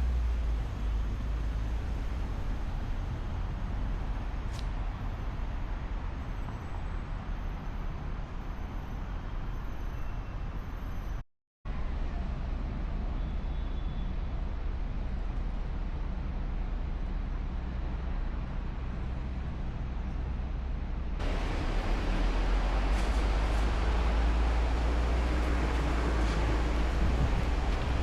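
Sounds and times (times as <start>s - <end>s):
city road traffic rumble: 0.0s - 28.0s.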